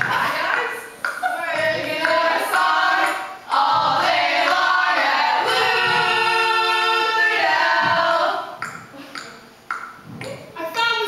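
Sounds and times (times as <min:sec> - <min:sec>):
voices singing together: 0:00.0 - 0:08.8.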